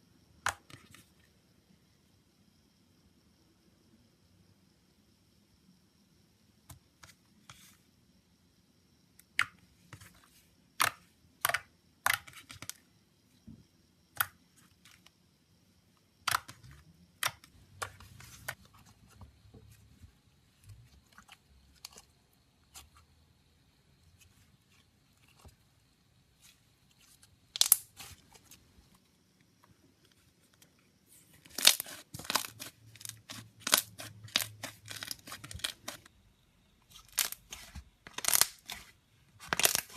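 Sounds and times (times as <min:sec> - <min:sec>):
slime clicking and popping: 0:38.1 - 0:38.8.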